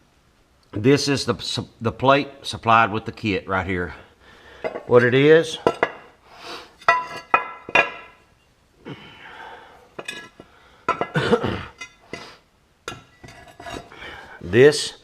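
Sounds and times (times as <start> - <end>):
metal parts clinking: 10.0 - 11.2, 12.9 - 13.9.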